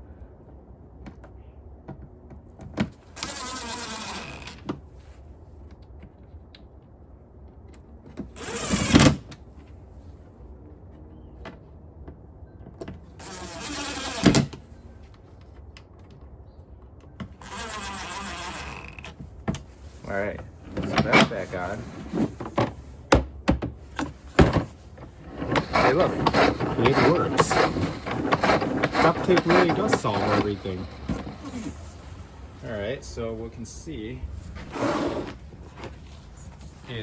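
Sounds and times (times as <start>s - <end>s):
plastic rasping and whirring: 2.9s - 4.7s, 8.3s - 9.3s, 13.1s - 14.6s, 17.2s - 22.9s, 23.9s - 32.5s.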